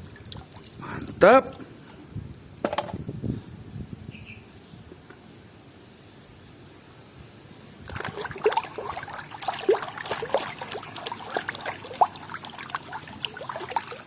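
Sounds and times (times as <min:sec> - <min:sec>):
water splashing and dribbling: 0:00.0 - 0:00.8, 0:07.8 - 0:14.0.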